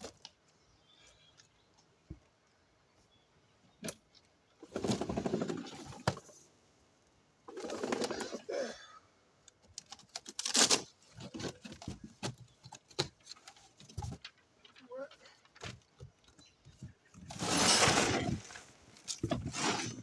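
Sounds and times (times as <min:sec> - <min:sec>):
scrapes and knocks of box and mower: 0:04.7 - 0:06.3, 0:17.2 - 0:20.0.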